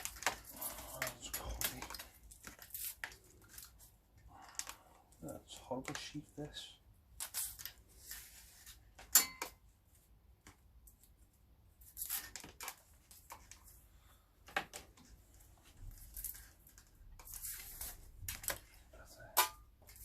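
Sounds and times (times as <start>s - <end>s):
plastic cable sheathing tearing: 0.0s - 3.8s, 7.2s - 7.8s.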